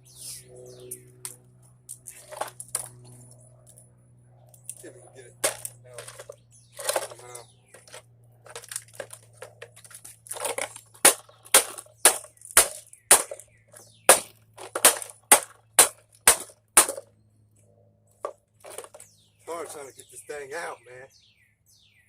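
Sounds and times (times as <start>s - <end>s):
scraping and rustling: 2.0s - 3.4s, 5.4s - 17.0s, 18.2s - 19.8s.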